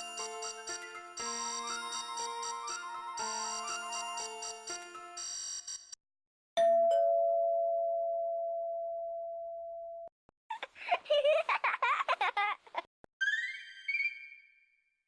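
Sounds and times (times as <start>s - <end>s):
chiming electronic ringtone melody: 0.0s - 5.8s
two-note doorbell ding-dong: 6.6s - 10.1s.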